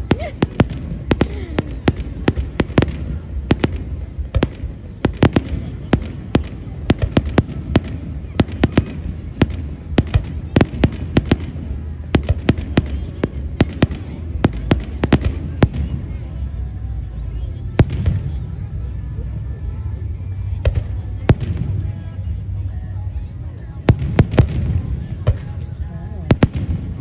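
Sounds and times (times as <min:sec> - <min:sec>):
fireworks bangs: 0:00.0 - 0:16.2
steady low rumble: 0:00.0 - 0:27.0.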